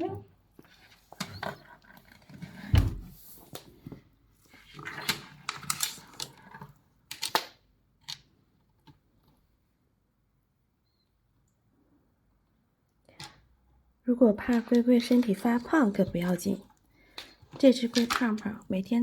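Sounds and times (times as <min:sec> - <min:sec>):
heavy thump: 0:02.7 - 0:03.1.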